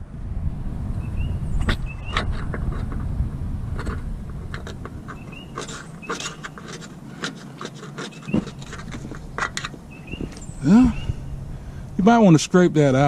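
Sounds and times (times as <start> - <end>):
low rumble: 0.0 - 5.6
hand tools clicking and knocking: 3.8 - 10.5
high rising chirp: 9.9 - 11.5.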